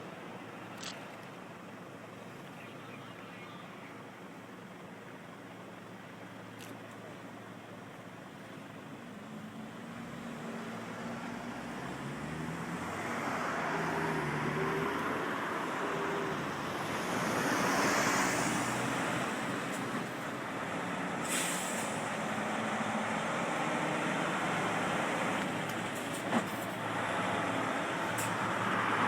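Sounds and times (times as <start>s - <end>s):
truck engine drone: 0.0s - 29.0s
air hiss: 21.2s - 22.1s.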